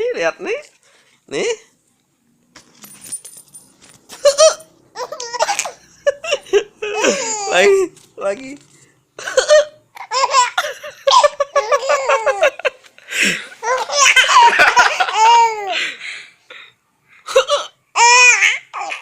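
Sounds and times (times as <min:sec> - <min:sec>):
baby laughing: 0:04.2 - 0:07.9, 0:09.2 - 0:12.8, 0:13.6 - 0:15.8, 0:17.3 - 0:19.0.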